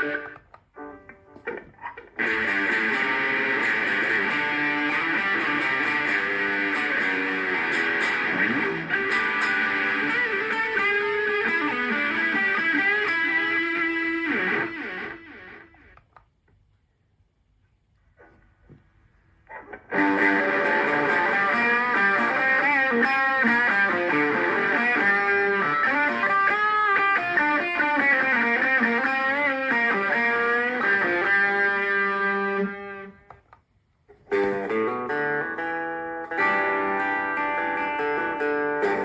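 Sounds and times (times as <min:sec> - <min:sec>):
electric guitar with bent notes: 0:00.0 - 0:16.1, 0:19.5 - 0:33.4, 0:34.1 - 0:39.0.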